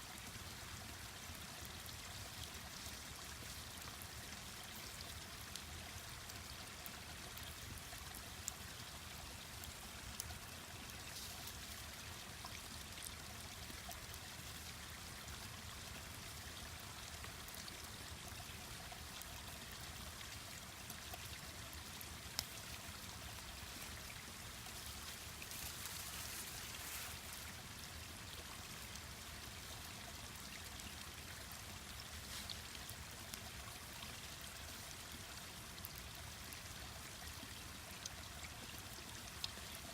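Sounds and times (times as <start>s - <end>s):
mountain stream rushing: 22.6s - 28.3s.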